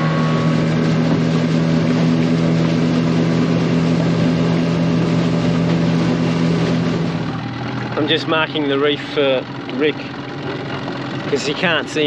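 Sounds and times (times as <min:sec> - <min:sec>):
boat motor running: 0:00.0 - 0:12.0.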